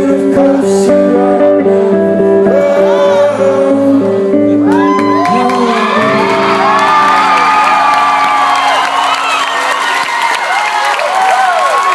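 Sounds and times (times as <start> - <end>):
crowd cheering and whooping: 4.6 - 11.9.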